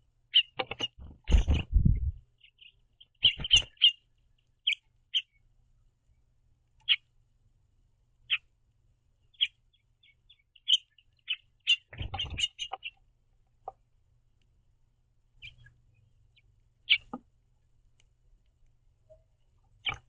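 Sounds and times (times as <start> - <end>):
finches chirping: 0.3 - 5.5, 6.8 - 7.1, 8.2 - 8.5, 9.2 - 13.8, 15.3 - 17.2, 19.1 - 20.0.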